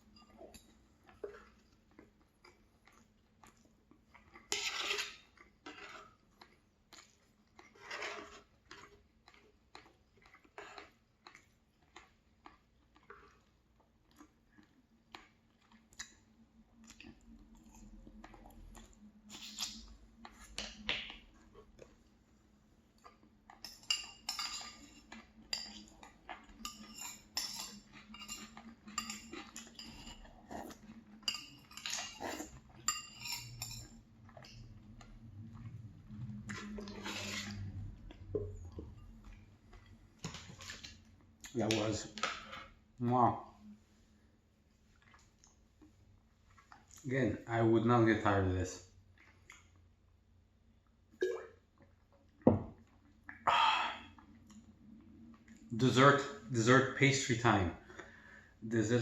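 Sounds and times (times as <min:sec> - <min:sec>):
chewing: 0:00.1 - 0:22.2, 0:22.8 - 0:23.9, 0:24.6 - 0:41.5, 0:44.8 - 0:47.1, 0:49.1 - 0:49.8
cutlery clinking on a plate: 0:23.7 - 0:25.9, 0:26.6 - 0:30.3, 0:31.2 - 0:34.6.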